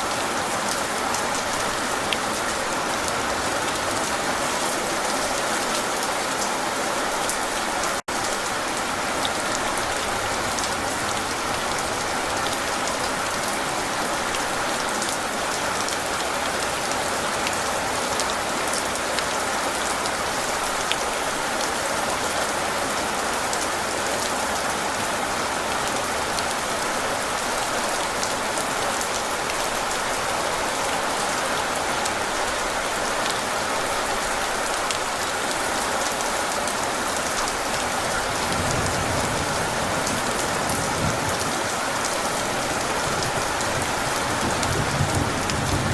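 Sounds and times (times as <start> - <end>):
steady rain hiss: 6.2 - 45.9.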